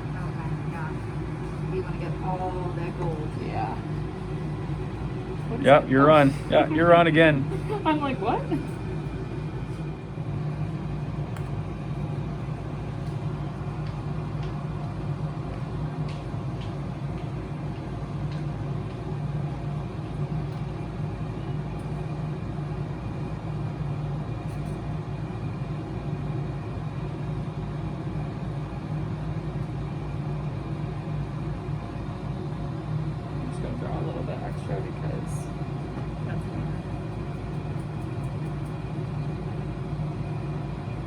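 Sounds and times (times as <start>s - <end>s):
centrifuge humming: 0.0s - 25.6s.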